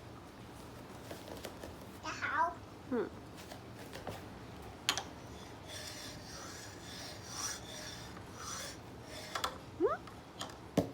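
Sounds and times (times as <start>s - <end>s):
soft rasping rubbing strokes: 5.2s - 9.6s.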